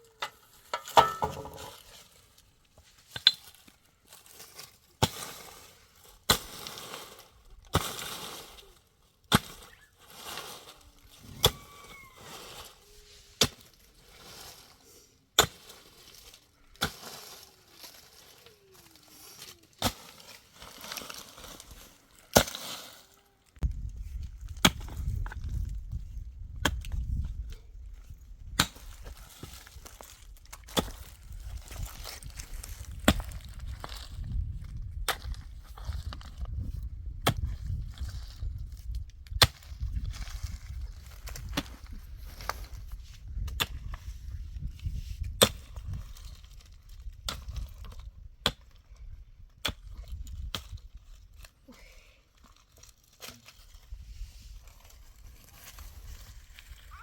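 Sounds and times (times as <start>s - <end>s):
scraping or rustling: 9.5s - 23.2s.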